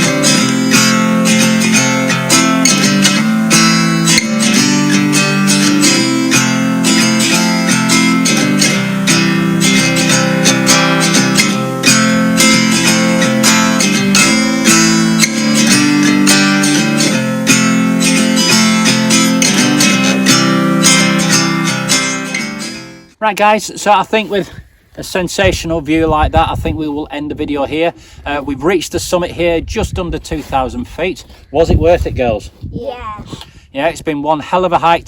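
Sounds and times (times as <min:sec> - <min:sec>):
strummed acoustic guitar: 0:00.0 - 0:23.2.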